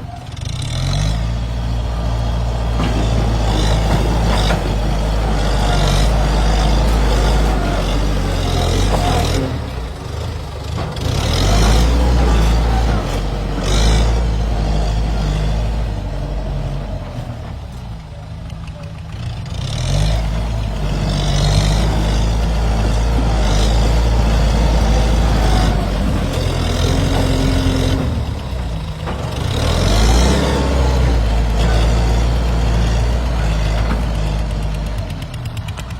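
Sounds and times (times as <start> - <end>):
tractor diesel engine running: 0.0 - 35.9.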